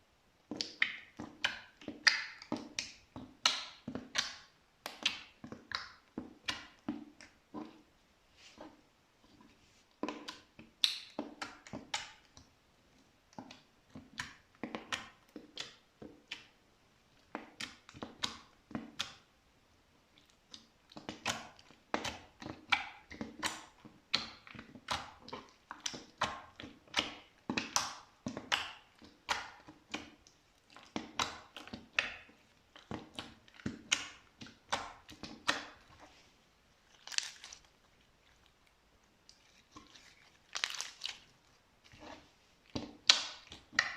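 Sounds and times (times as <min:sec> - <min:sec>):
slime squeezed by hand: 0:36.8 - 0:38.6, 0:39.2 - 0:42.3.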